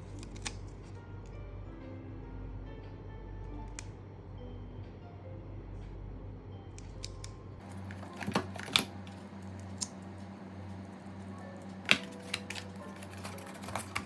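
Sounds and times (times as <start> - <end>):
cardboard and plastic clicking: 0.0 - 1.0, 6.8 - 10.0, 11.6 - 14.0
steady low hum: 0.0 - 14.0.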